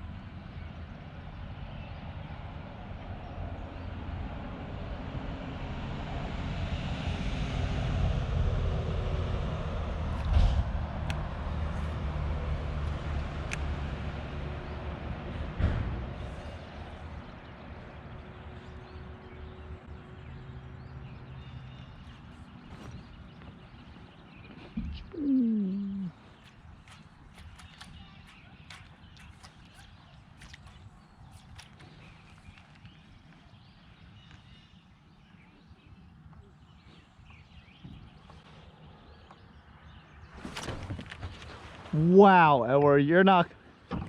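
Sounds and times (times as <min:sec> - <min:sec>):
faint bird chirps: 0:22.7 - 0:39.5.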